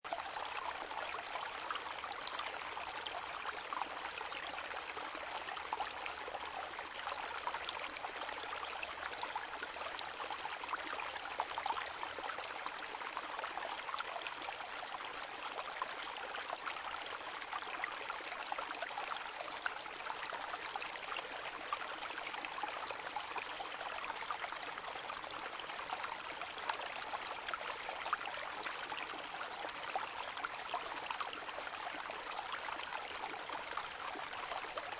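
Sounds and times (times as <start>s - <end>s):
stream trickling and babbling: 0.0s - 34.9s.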